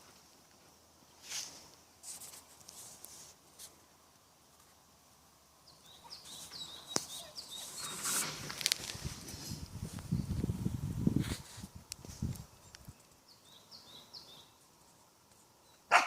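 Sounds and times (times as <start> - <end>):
soft rustling: 0.0 - 3.9, 6.0 - 12.9
small bird chirping: 5.6 - 8.3, 12.4 - 15.9.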